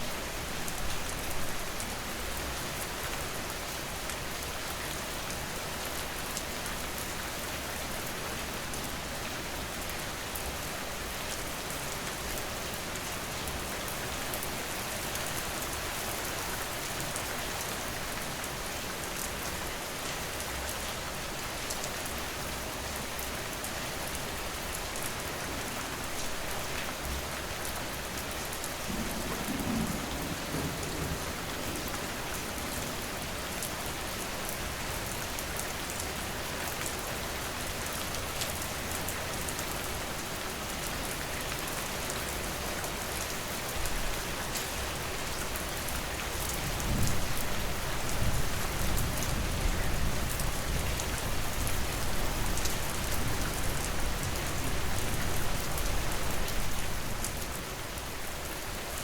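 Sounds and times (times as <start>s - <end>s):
heavy rain falling: 0.1s - 59.0s
thunder rumbling: 28.8s - 33.4s.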